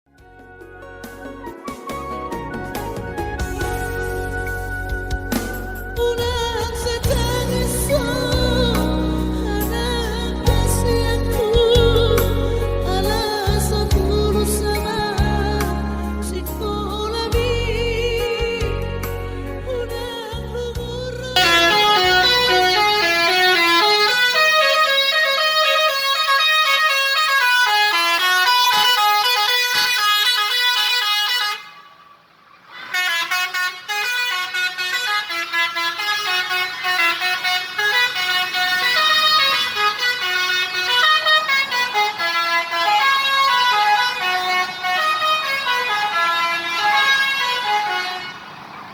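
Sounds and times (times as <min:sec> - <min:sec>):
multi-tone bus air horn melody: 0:02.6 - 0:17.4, 0:21.2 - 0:48.9.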